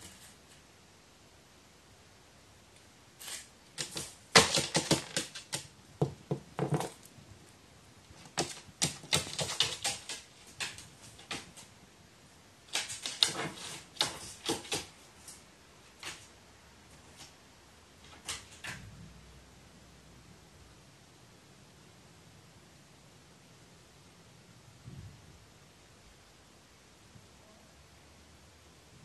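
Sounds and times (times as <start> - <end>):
crow pecking sharp taps: 8.2 - 11.6.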